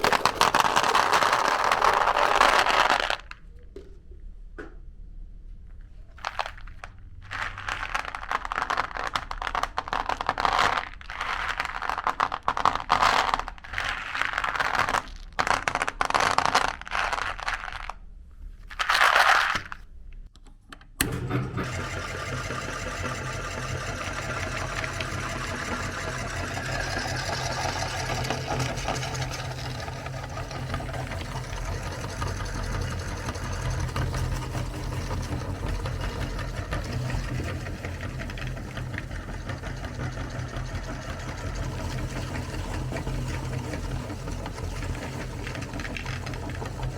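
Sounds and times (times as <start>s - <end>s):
crinkling and rustling: 0.0s - 4.2s, 5.7s - 20.9s, 27.0s - 46.9s
electric meat grinder running: 21.0s - 46.9s.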